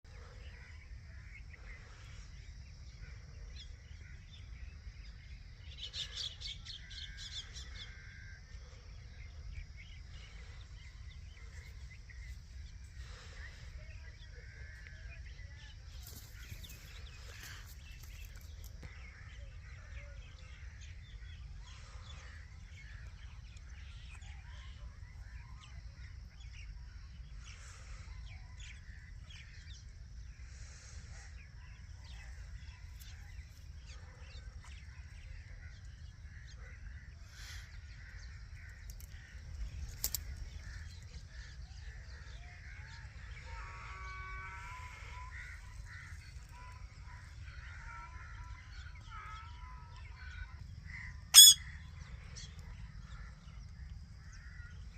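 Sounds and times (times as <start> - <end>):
parakeets chattering: 51.3 - 51.8.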